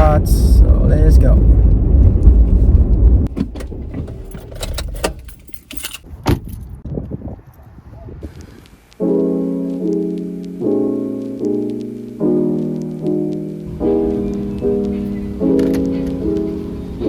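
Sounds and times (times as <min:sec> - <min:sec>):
keys jangling: 0:03.7 - 0:06.7
piano music: 0:09.0 - 0:17.0.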